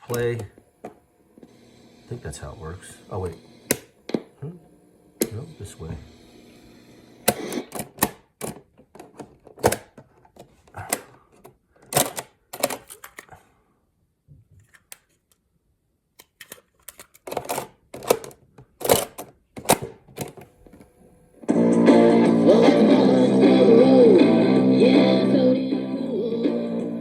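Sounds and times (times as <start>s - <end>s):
cassette deck clicking: 3.2s - 4.3s, 7.2s - 10.0s.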